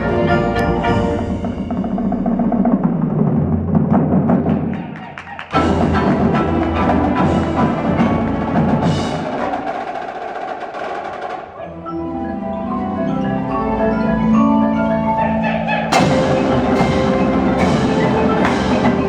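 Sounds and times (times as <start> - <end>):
marimbas playing held notes: 0.0 - 2.6, 11.6 - 19.0
marching drums: 0.0 - 11.6, 16.0 - 19.0.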